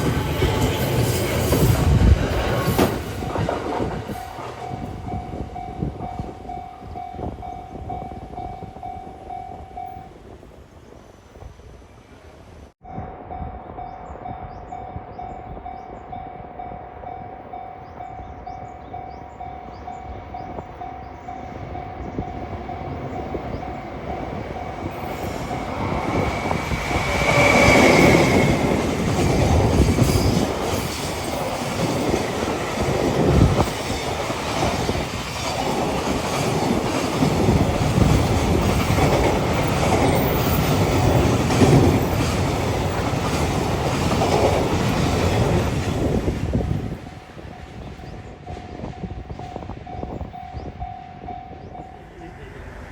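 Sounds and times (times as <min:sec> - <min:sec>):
train high tone: 0:00.0 - 0:10.4, 0:12.8 - 0:52.9
train rumbling past: 0:00.0 - 0:52.9
wheels clattering over rail joints: 0:24.9 - 0:47.3.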